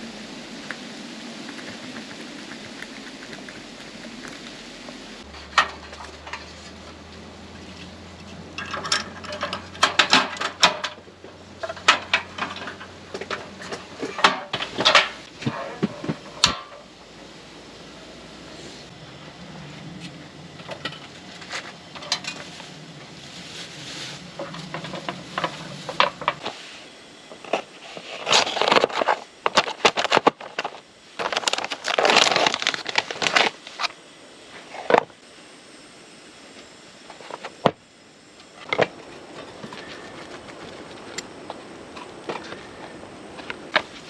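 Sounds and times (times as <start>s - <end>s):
low steady hum: 0.0s - 44.0s
scraping and rustling: 1.5s - 16.9s, 19.8s - 34.0s.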